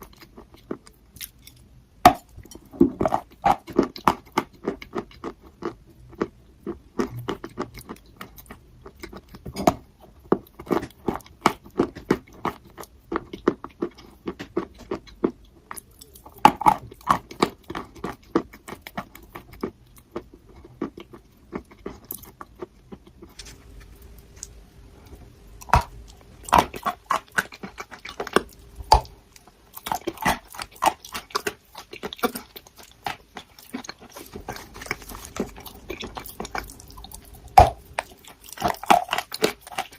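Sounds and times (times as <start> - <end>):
chalk crunching while chewed: 25.6 - 39.9.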